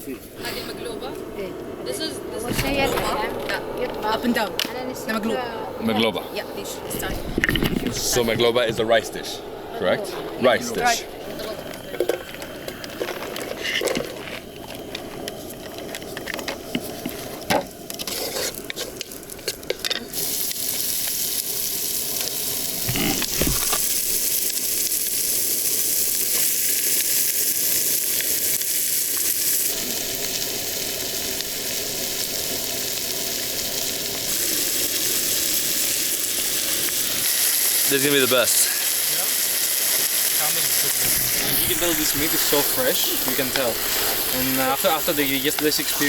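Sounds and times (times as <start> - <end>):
food sizzling in hot oil: 10.4 - 46.0.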